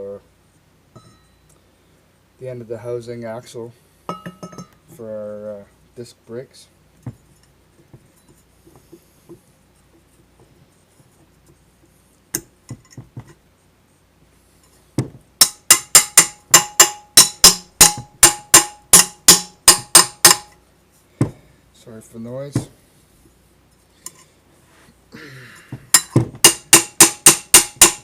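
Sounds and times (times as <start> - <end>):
hammer striking metal: 15.4 - 20.6, 25.9 - 28.0.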